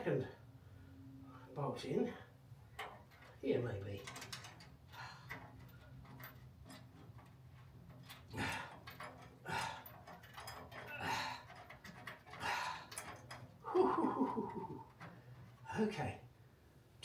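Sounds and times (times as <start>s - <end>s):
man breathing hard: 8.4s - 10.0s, 10.9s - 11.6s, 12.3s - 13.1s.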